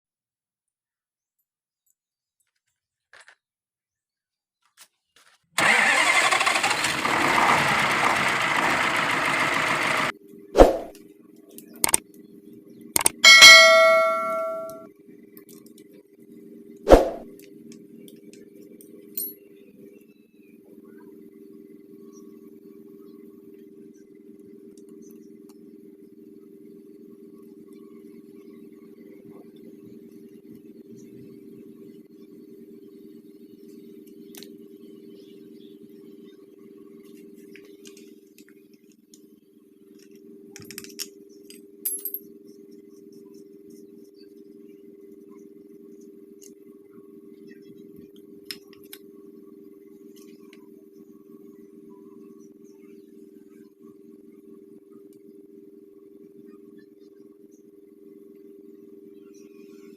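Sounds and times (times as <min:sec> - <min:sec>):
metal parts and tools clinking: 0:13.0 - 0:14.8
struck metal ringing: 0:13.2 - 0:14.8.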